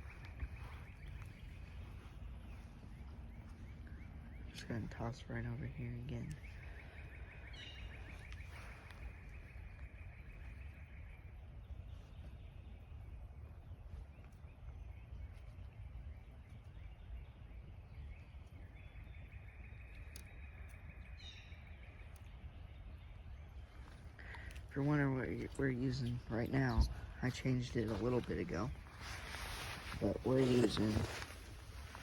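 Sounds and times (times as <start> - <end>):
bird chirp: 0.0 - 32.0.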